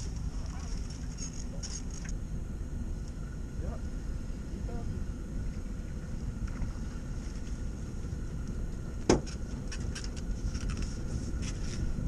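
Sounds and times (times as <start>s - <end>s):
fishing boat engine rumble: 0.0s - 12.0s
wind on microphone: 2.8s - 12.0s.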